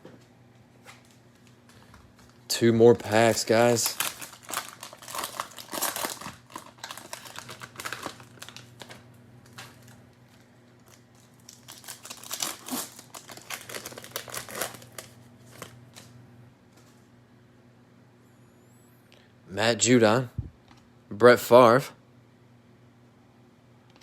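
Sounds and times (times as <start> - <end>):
cellophane wrapper crinkling: 1.0 - 16.1.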